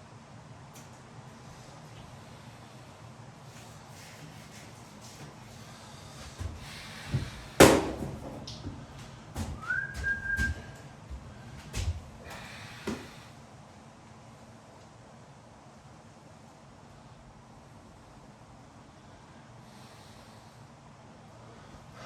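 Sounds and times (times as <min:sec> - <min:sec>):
rising whistle-like tone: 0:09.6 - 0:10.8.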